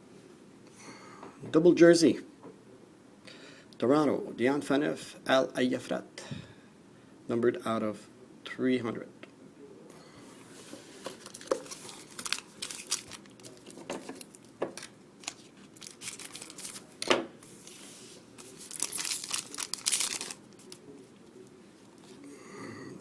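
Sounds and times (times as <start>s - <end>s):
wrapper tearing and crinkling: 11.2s - 17.0s, 18.4s - 20.8s.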